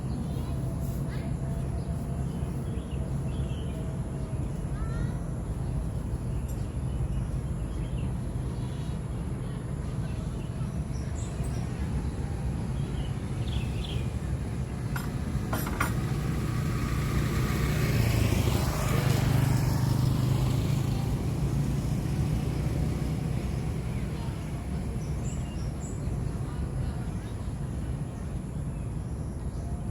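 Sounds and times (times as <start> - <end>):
road traffic hum: 0.0 - 29.9
vehicle passing: 15.9 - 24.0.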